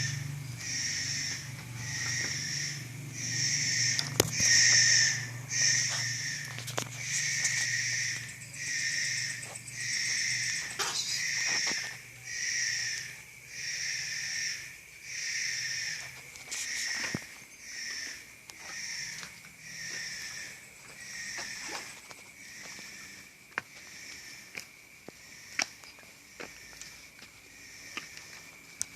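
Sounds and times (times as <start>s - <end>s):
rhythmic hissing: 0.0s - 21.6s.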